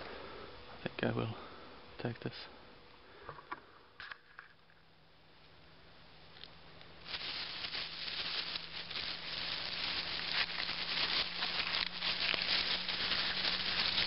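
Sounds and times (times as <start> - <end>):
campfire crackling and popping: 7.0 - 14.0.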